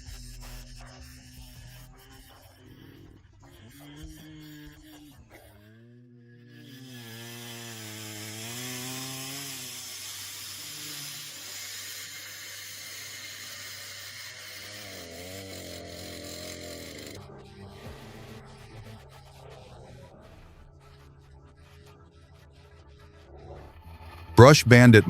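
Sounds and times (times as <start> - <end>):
hiss of wood being cut: 6.5 - 17.2
wood-cutting machine engine running: 6.5 - 18.6.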